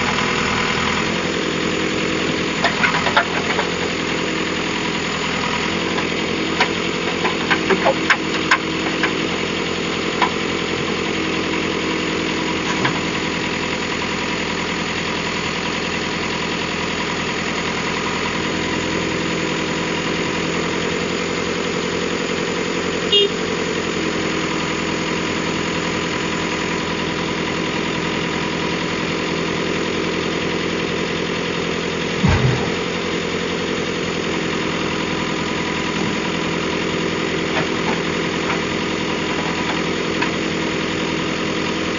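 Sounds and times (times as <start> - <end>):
heavy diesel engine running: 0.0 - 41.9
short knocks: 32.2 - 32.9
low thump: 32.2 - 33.0.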